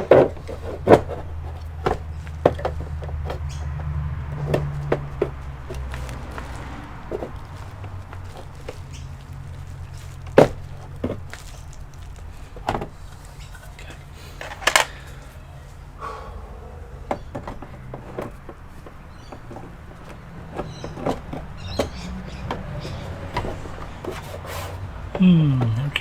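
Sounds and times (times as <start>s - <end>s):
hands and tools clicking on computer parts: 14.4s - 15.0s.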